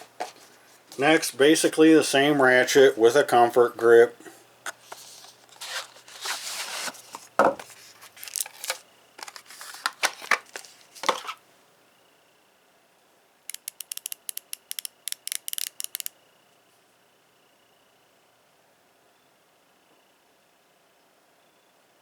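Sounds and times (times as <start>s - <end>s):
rustling and knocking of tool: 4.7s - 11.4s
ratchet clicking: 13.5s - 16.1s.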